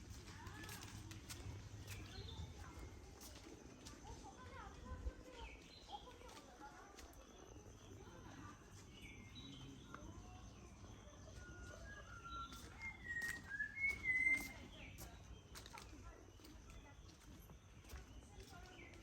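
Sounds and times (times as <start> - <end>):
bird whistling notes: 11.8 - 14.7.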